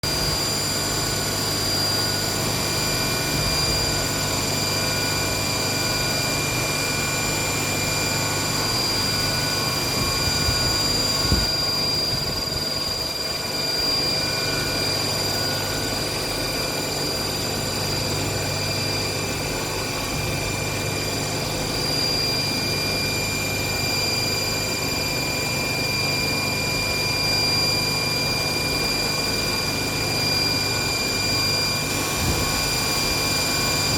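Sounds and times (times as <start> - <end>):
machine high whine: 0.0 - 33.9
low machine hum: 0.1 - 33.9.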